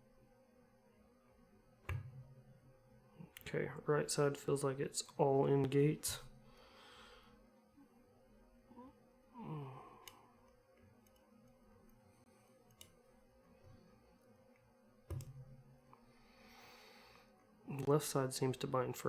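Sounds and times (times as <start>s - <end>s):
person sighing: 8.7s - 10.3s.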